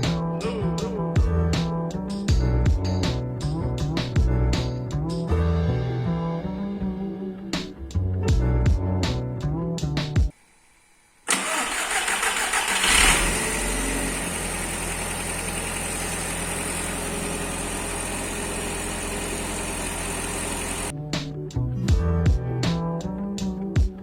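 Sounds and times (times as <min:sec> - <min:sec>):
car engine starting and idling: 0:11.3 - 0:20.9.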